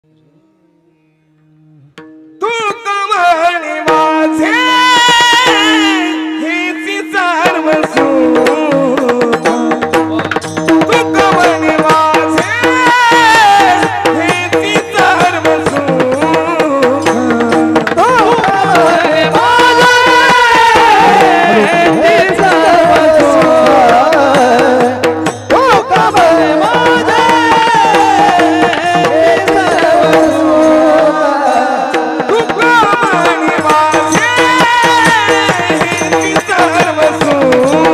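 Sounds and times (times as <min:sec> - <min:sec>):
tabla: 0:01.3 - 0:37.9
person singing devotional melody: 0:02.4 - 0:37.9.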